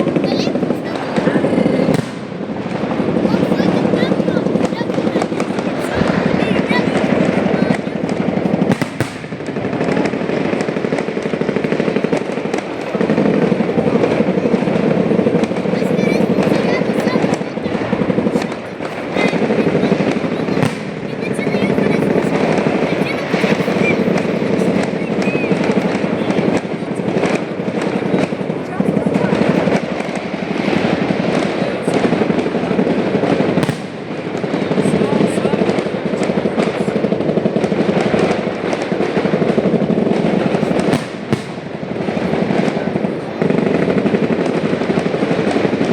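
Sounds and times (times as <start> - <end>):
firework bangs: 0.0 - 45.9
fireworks crackling: 0.0 - 45.9.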